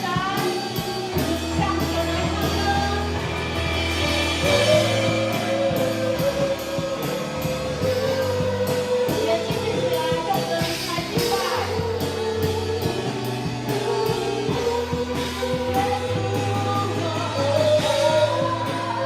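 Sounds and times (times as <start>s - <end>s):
live worship band music: 0.0s - 19.0s
cymbals struck: 0.5s - 15.8s
long held note: 2.0s - 9.6s.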